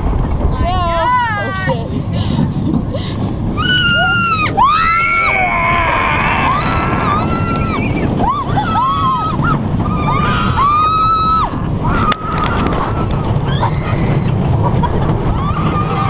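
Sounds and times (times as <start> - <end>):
roller coaster train rumble: 0.0 - 16.0
wind rushing over microphone: 0.0 - 16.0
riders screaming: 3.6 - 14.5, 15.3 - 16.0.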